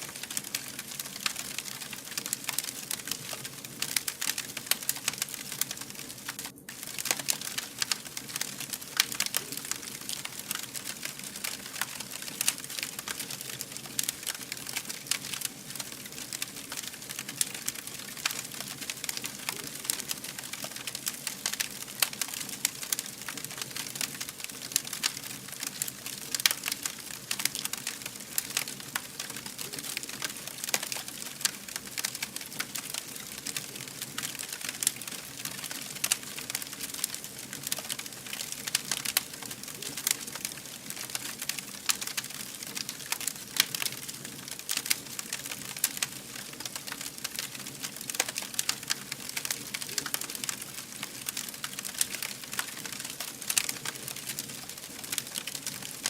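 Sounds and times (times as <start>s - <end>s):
fire crackling: 0.0s - 56.0s.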